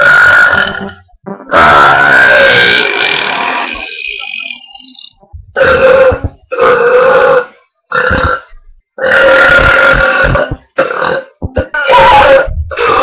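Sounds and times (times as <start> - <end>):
girls belching loudly: 5.6 - 13.0.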